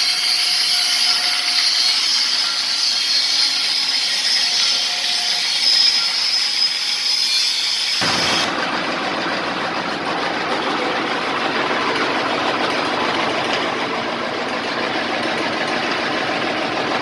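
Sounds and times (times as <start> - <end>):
drilling rig engine running: 8.0 - 17.0.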